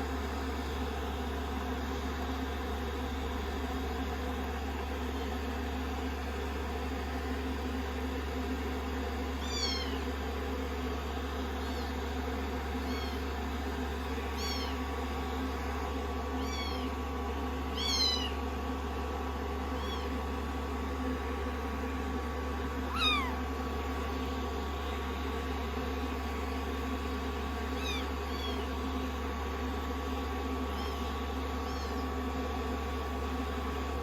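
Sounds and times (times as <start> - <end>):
kittens mewing: 9.4 - 10.2, 11.6 - 17.1, 17.7 - 18.5, 19.7 - 20.3, 22.8 - 24.1, 27.4 - 29.1, 30.4 - 32.4.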